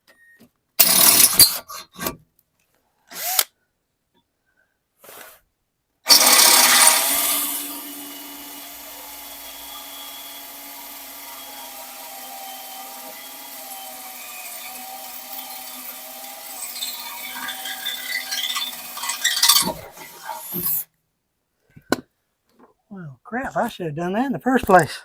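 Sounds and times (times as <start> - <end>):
electric drill running: 0.8 - 1.5, 3.1 - 3.5, 6.1 - 20.8.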